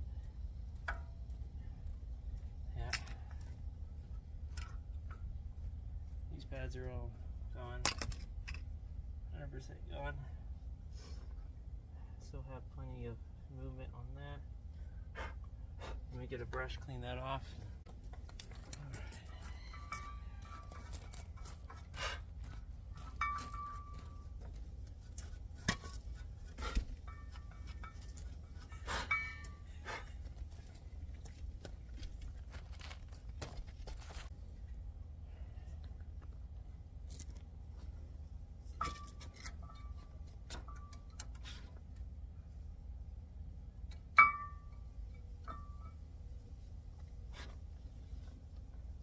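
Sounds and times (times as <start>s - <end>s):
low hum: 0.0s - 49.0s
steady low rumble: 0.0s - 49.0s
metal tools clinking: 22.9s - 30.8s, 38.7s - 41.7s.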